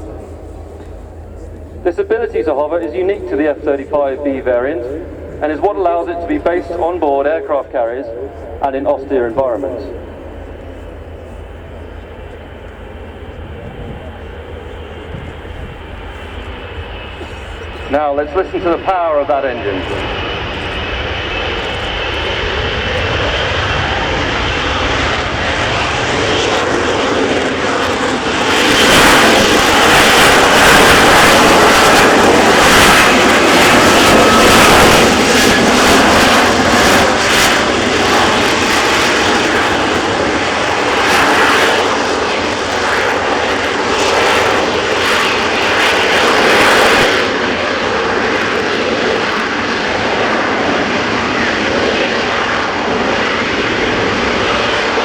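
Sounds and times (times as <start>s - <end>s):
jet engine crackling roar: 0.0s - 55.0s.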